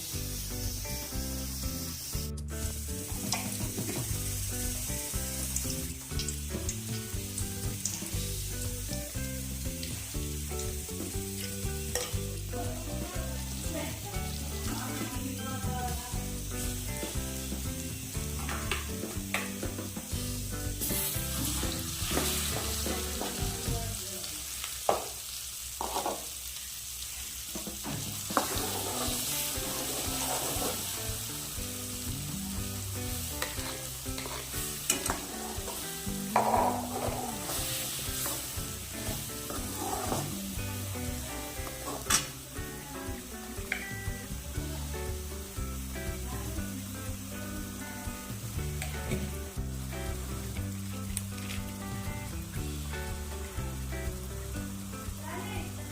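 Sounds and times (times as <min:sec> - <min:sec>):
chicken sizzling in a pan: 0:00.0 - 0:55.9
spoon scraping a pan: 0:28.3 - 0:30.9, 0:33.4 - 0:38.5, 0:39.1 - 0:40.5.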